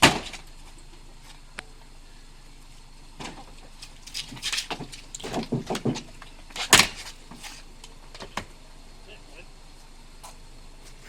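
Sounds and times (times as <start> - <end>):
sledgehammer striking car: 0.0 - 0.4, 4.2 - 7.4.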